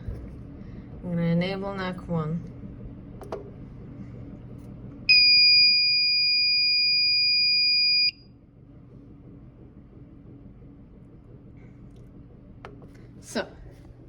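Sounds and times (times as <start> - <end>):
fire alarm high-pitched tone: 5.1 - 8.2.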